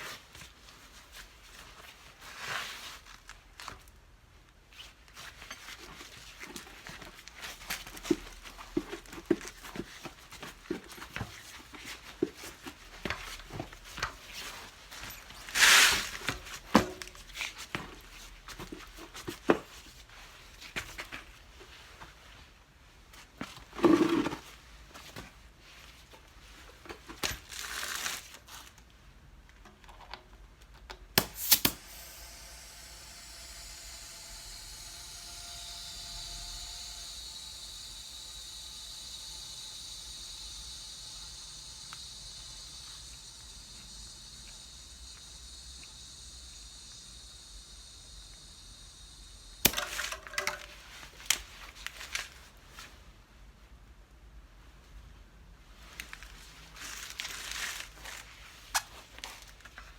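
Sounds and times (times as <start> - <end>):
steady hiss: 31.2 - 51.8.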